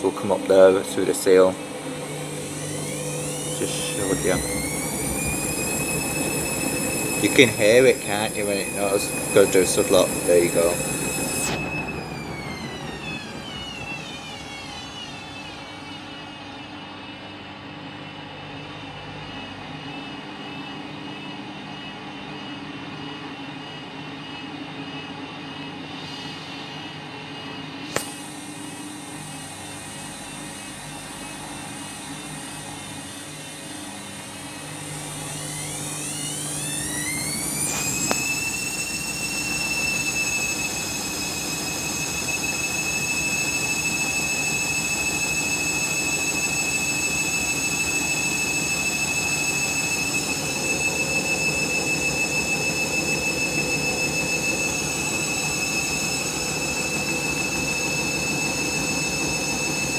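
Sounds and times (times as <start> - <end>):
washing machine spinning up: 0.0 - 59.9.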